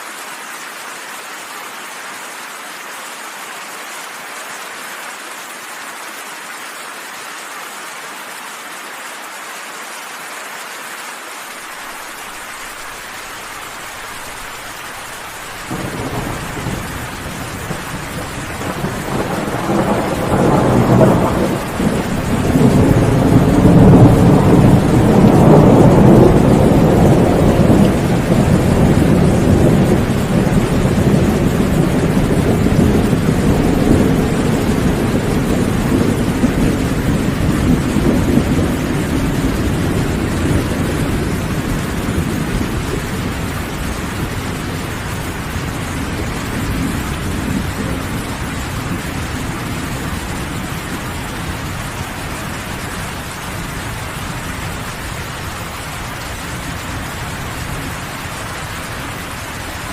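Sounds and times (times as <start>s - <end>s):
steady rain: 0.0s - 59.9s
rolling thunder: 14.2s - 59.9s.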